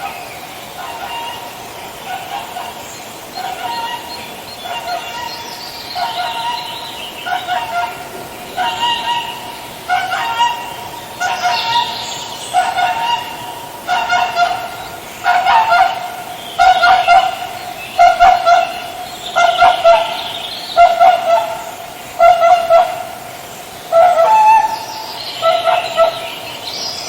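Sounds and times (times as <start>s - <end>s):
swan honking: 0.8s - 23.3s, 23.9s - 26.5s.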